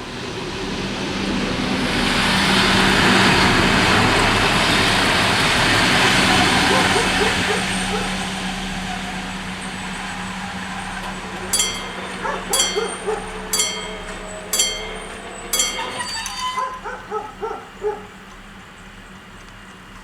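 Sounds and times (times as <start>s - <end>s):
dog barking and yelping: 6.5s - 8.3s, 11.6s - 18.2s
level-crossing bells: 10.8s - 18.2s.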